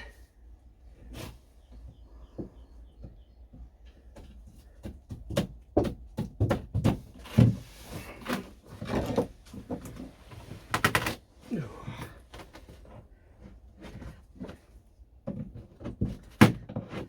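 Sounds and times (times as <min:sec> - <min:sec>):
knocks and thuds: 0:04.8 - 0:07.6.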